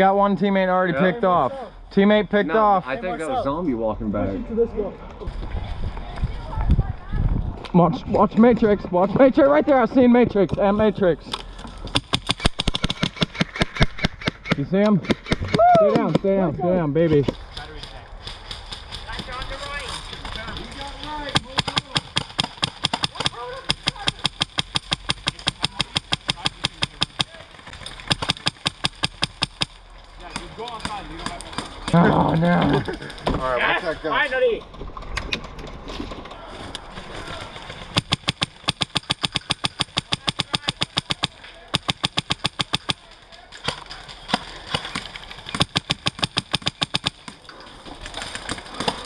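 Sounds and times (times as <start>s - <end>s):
airsoft guns firing: 11.9s - 16.1s, 20.7s - 31.8s, 37.7s - 47.4s.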